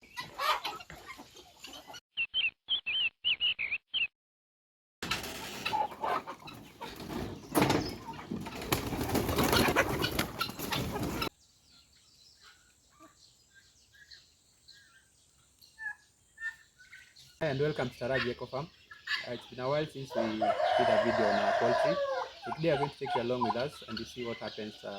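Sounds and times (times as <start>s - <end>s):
chickens clucking: 0.0s - 2.0s, 5.0s - 24.9s
chicks peeping: 0.0s - 4.1s, 5.3s - 24.9s
wings flapping: 5.0s - 11.3s.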